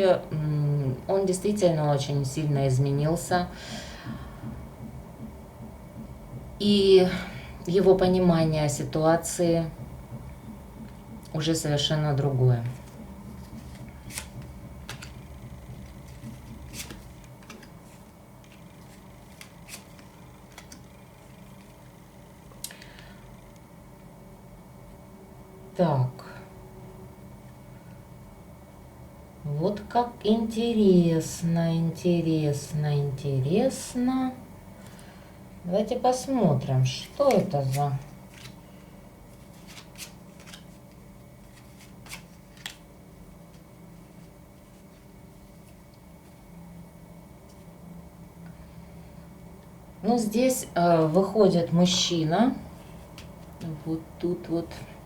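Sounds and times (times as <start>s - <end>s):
low steady hum: 0.0s - 55.0s
cards clicking and sliding: 12.8s - 15.2s, 15.8s - 21.8s, 37.3s - 38.6s, 39.3s - 42.9s
cards clicking on a table: 13.5s - 15.2s, 15.8s - 17.8s, 18.4s - 20.9s.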